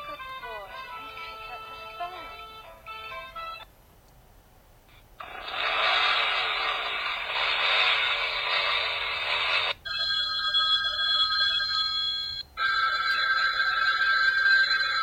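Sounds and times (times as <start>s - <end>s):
static-like hiss ringtone: 5.2s - 15.0s.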